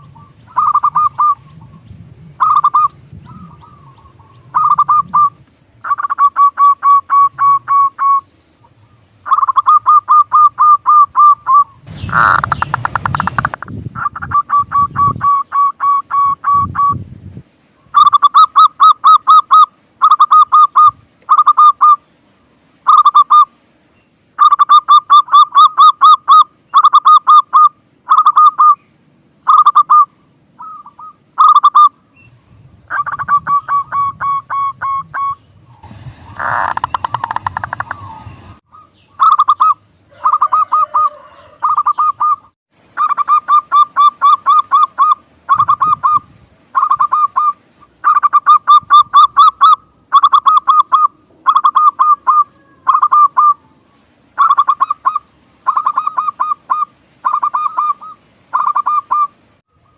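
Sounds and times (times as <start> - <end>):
doves cooing: 0.0 - 17.0, 36.3 - 59.9.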